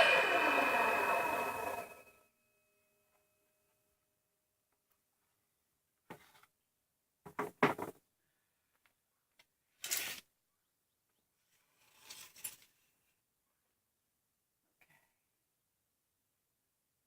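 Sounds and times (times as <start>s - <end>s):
short scrape or clatter: 0.0s - 2.1s.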